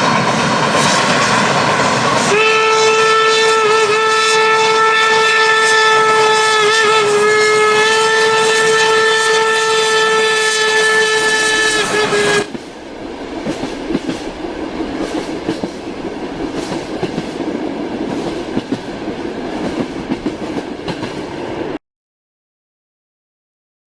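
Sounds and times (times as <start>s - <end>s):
train wheels rumbling on rails: 0.0s - 21.8s
train horn: 0.8s - 12.5s.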